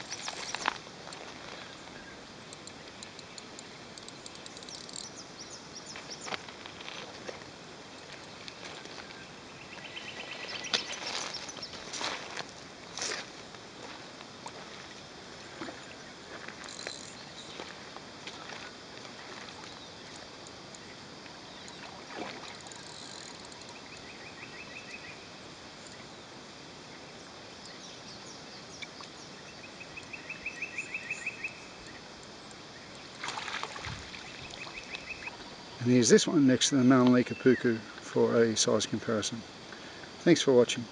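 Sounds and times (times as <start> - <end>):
steady hiss: 0.0 - 40.9
rapid high ticks: 2.4 - 5.2
faint clicks: 2.5 - 5.1.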